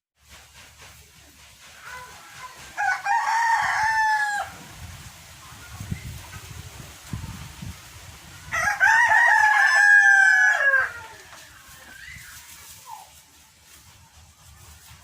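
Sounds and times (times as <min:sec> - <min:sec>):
rooster crowing: 0:02.8 - 0:04.6, 0:08.5 - 0:11.3.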